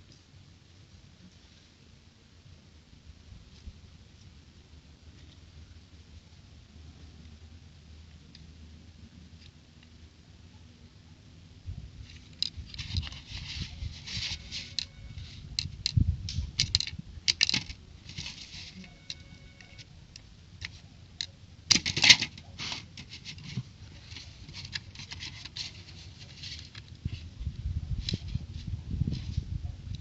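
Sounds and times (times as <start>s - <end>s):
plastic toy bricks clicking: 16.6s - 17.8s.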